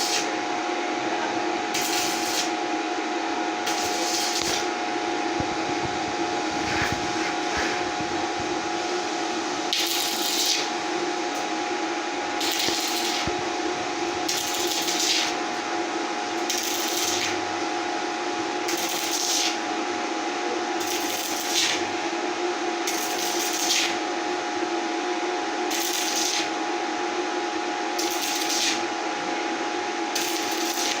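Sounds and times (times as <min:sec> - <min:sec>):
can-sealing machine humming: 0:05.4 - 0:22.2, 0:30.1 - 0:31.0.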